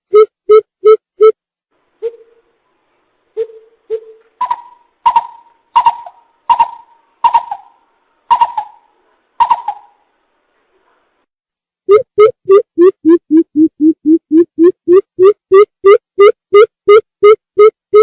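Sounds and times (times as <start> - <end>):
coucal hooting: 3.4 - 10.0.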